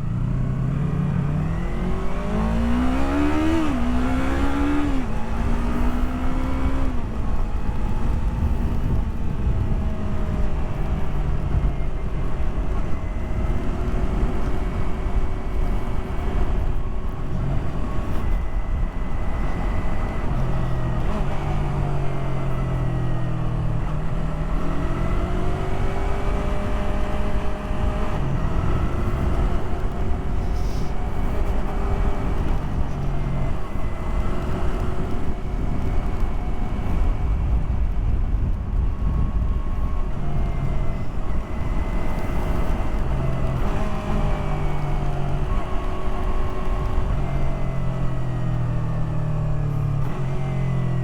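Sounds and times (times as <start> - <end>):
motorcycle engine revving: 0.0 - 51.0.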